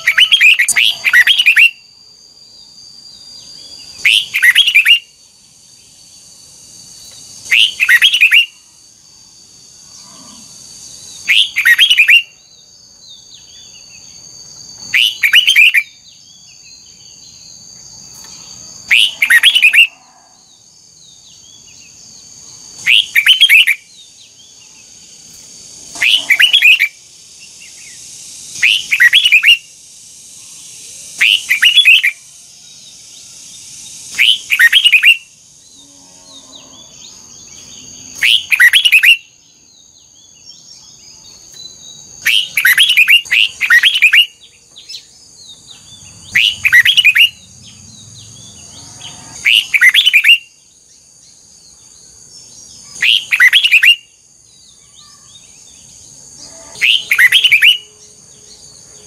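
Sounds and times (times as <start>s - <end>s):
bulbul singing: 0.0s - 8.8s, 10.6s - 59.0s.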